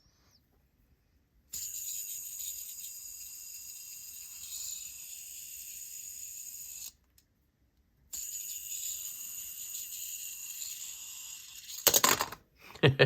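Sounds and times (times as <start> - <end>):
fidget spinner bearing whining: 1.5 - 7.1, 8.1 - 12.3.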